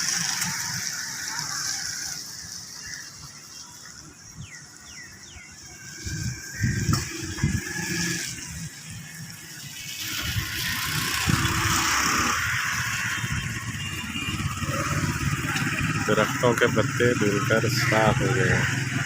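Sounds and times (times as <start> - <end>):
tyre hiss on wet road: 0.0 - 4.2, 5.7 - 13.7
low uneven traffic rumble: 0.0 - 19.0.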